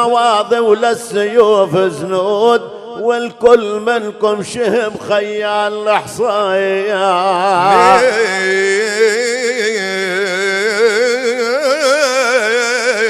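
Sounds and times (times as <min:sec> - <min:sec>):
man singing ornamented long note: 0:00.0 - 0:13.0.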